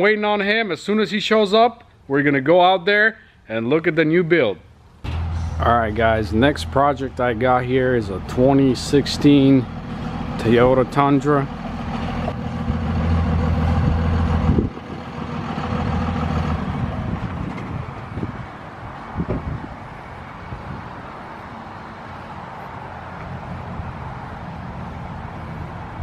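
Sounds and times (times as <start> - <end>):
truck engine idling: 5.0 - 19.1.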